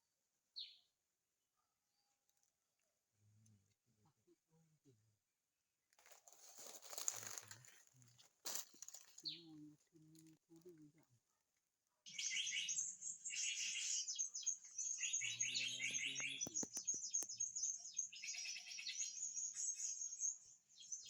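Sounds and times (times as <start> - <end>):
small birds chirping: 0.6 - 0.9, 7.0 - 21.0.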